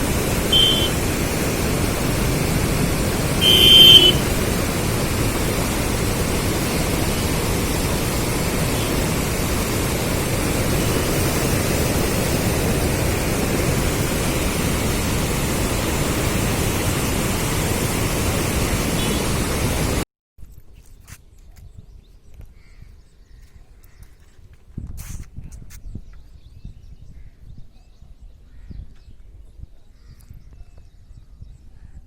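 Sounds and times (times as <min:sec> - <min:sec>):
floodwater rushing roar: 0:00.0 - 0:20.0.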